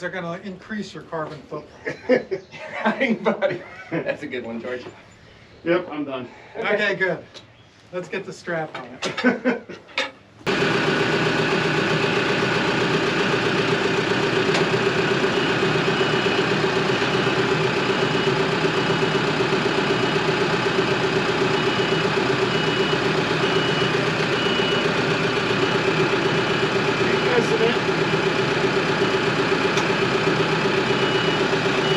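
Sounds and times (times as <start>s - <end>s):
engine idling: 10.5s - 31.9s.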